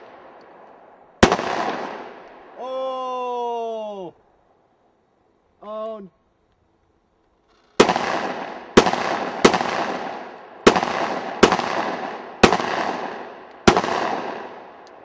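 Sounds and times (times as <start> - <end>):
pistol shots echoing: 0.0 - 2.6, 7.8 - 14.9.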